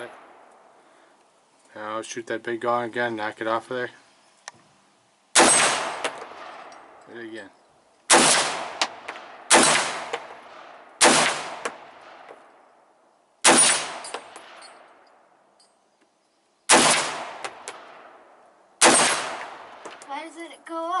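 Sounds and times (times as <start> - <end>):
rifle shots with echo: 5.4 - 7.0, 8.1 - 12.6, 13.4 - 15.0, 16.7 - 20.1.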